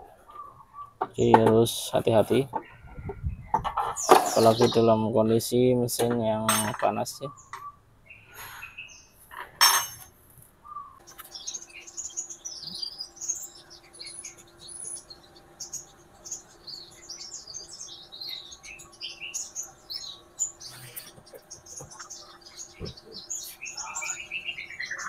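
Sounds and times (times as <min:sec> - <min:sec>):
birds chirping: 0:00.0 - 0:25.0.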